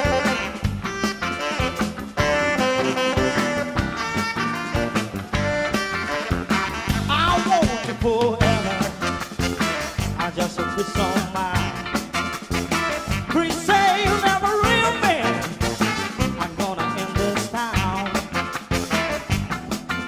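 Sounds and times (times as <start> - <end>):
wavering lead melody: 0.0 - 7.5
live band playing: 0.0 - 20.0.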